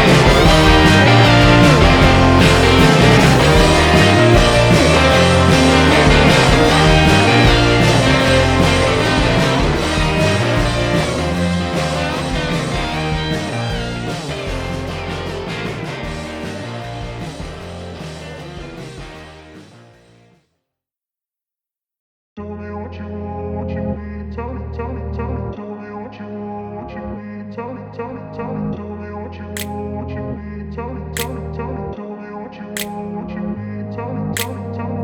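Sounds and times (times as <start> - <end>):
rock music with guitar: 0.0 - 19.8.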